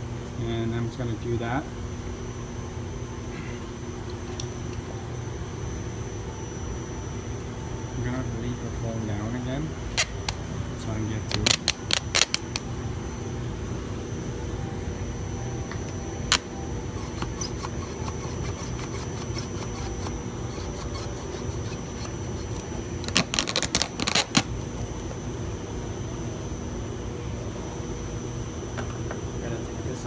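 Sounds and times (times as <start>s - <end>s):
steady background hum: 0.0s - 30.0s
plastic parts being worked by hand: 11.3s - 12.6s, 16.3s - 24.5s.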